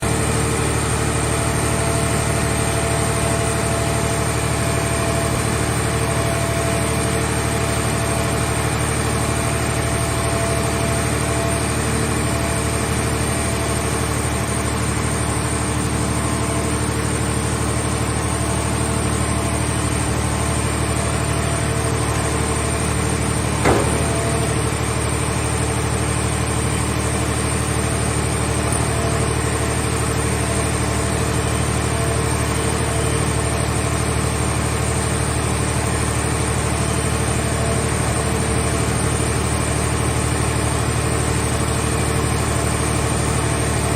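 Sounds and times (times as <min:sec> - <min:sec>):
hydraulic power unit running: 0:00.0 - 0:43.9
sharp knock: 0:23.6 - 0:24.7.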